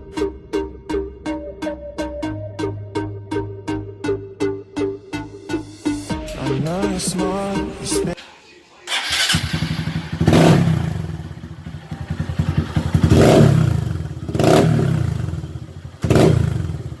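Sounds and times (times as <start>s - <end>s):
motorcycle engine idling and revving: 8.9s - 17.0s.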